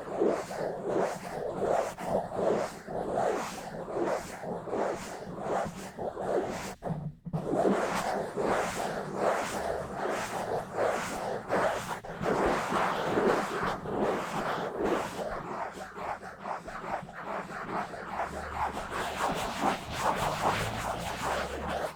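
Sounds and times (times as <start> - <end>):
fingers scratching a microphone: 5.5 - 21.9.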